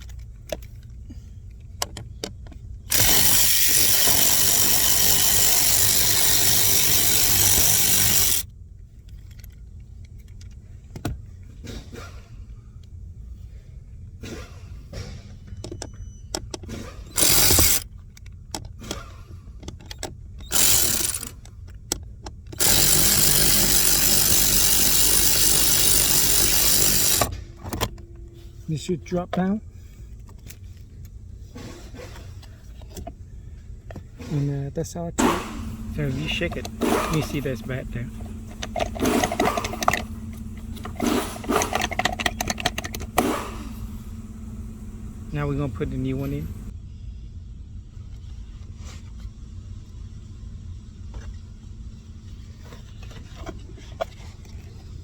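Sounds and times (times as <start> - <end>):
handling clicks and knocks: 0.0 - 8.4, 35.2 - 46.7
power drill spinning out screws: 2.9 - 8.4, 17.0 - 17.8, 20.4 - 21.4, 22.6 - 27.3, 35.2 - 46.7
blower fan rattling when shaken: 35.3 - 46.7.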